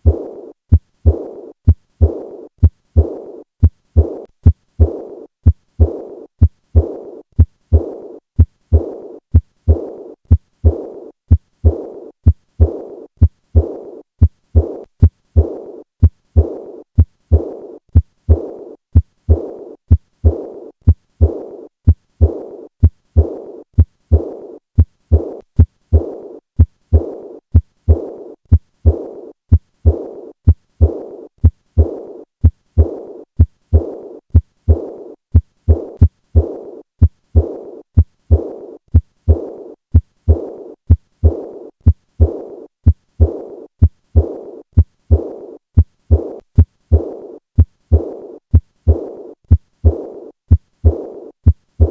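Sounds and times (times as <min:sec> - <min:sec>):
blowing heart murmur: 0:00.0 - 0:14.8, 0:32.8 - 0:51.9
heartbeat thumps: 0:00.0 - 0:51.9.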